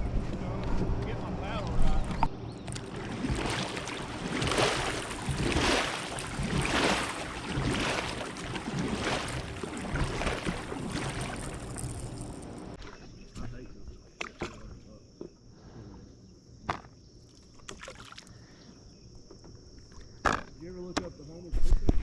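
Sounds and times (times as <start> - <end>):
paddle swishing through water: 2.7 - 13.0.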